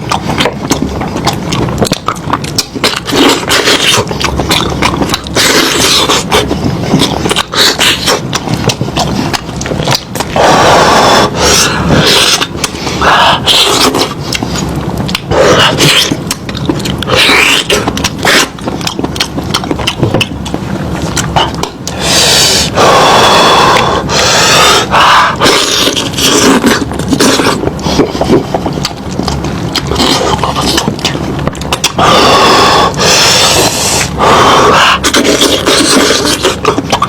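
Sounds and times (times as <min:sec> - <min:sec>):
chewing mouth sounds: 0:00.0 - 0:37.0.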